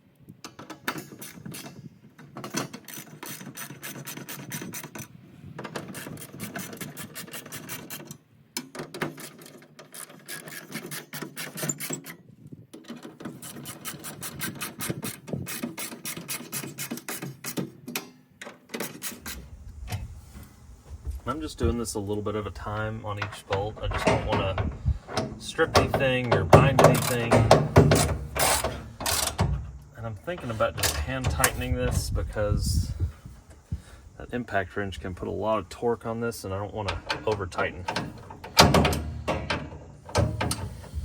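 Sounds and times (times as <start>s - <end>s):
hand ratchet clicking: 2.5s - 5.1s, 23.9s - 31.8s.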